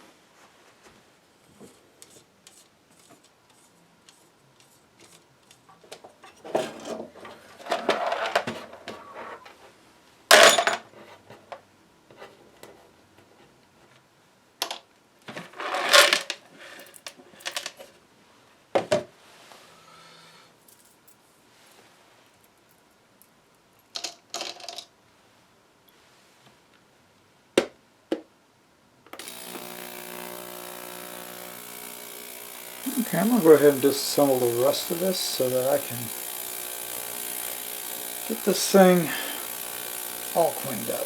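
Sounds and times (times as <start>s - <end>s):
small parts clicking: 29.2s - 41.0s.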